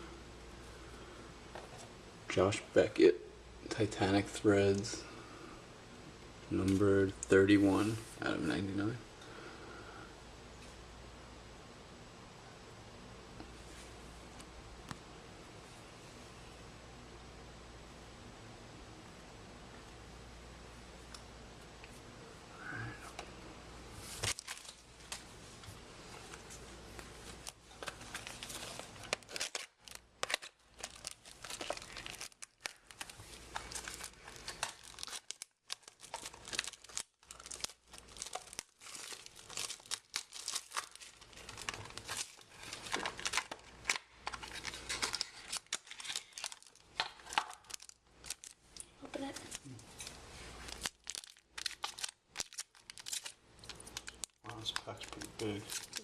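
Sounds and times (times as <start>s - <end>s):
plastic wrapper crinkling and tearing: 24.1s - 25.3s, 26.3s - 56.0s.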